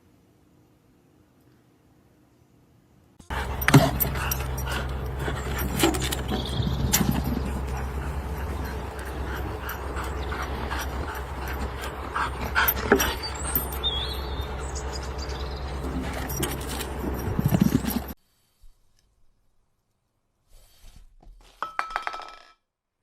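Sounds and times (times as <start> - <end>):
steady low hum: 2.0 - 18.2
dog sounds: 3.3 - 18.2.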